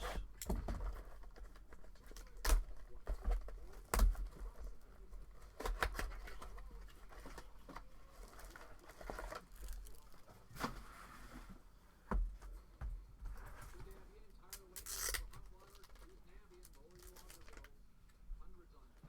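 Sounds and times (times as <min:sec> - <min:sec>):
card packs being handled and opened: 0:00.2 - 0:10.8, 0:13.4 - 0:17.8.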